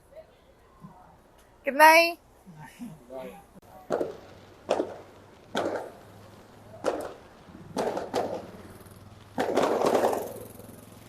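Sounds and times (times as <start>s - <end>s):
fireworks banging with echo: 3.6s - 11.0s.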